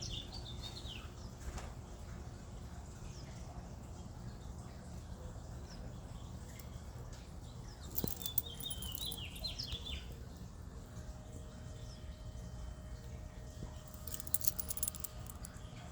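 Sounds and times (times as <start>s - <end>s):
songbird chirping: 7.7s - 10.4s.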